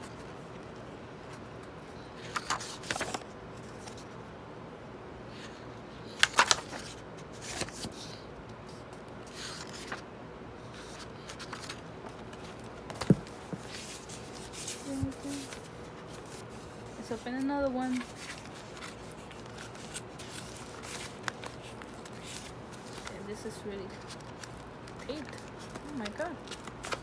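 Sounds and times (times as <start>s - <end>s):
packaging crinkling: 17.8s - 27.0s.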